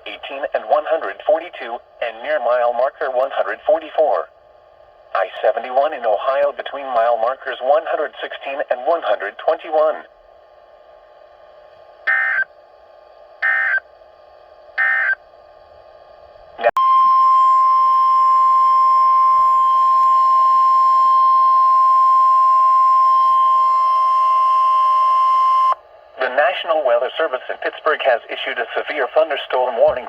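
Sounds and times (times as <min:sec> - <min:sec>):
faint radio hiss: 0:00.1 - 0:04.3, 0:26.1 - 0:30.0
steady warning alarm tone: 0:12.0 - 0:12.5, 0:13.4 - 0:13.9, 0:14.8 - 0:15.2, 0:16.7 - 0:25.8
data burst screech: 0:13.4 - 0:13.8.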